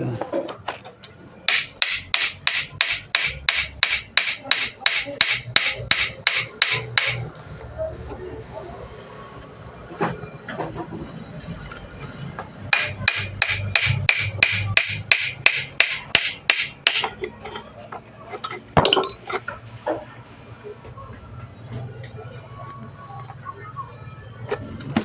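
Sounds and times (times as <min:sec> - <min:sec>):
hammer blows: 0:01.5 - 0:07.3, 0:12.7 - 0:17.3.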